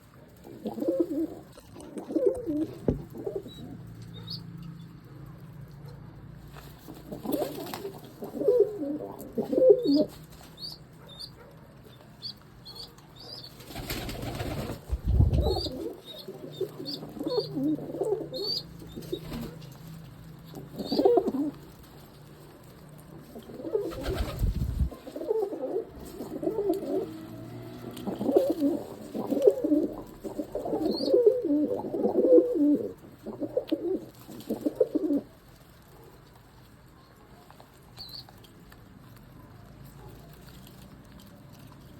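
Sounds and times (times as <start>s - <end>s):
pigeons cooing: 0.2s - 4.4s, 6.9s - 11.5s, 12.7s - 19.8s, 20.4s - 21.7s, 23.2s - 35.4s
wings flapping: 13.5s - 15.9s, 18.9s - 19.8s, 23.6s - 25.1s.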